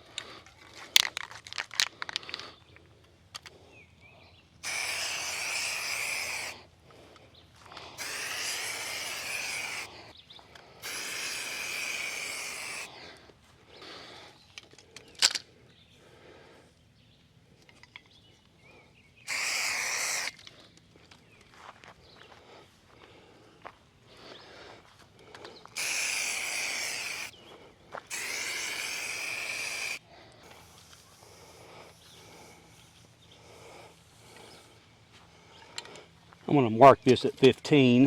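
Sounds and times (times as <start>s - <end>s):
aerosol paint spraying: 4.6s - 6.6s, 7.8s - 10.1s, 10.8s - 13.0s, 19.2s - 20.6s, 25.7s - 27.4s, 28.0s - 34.7s.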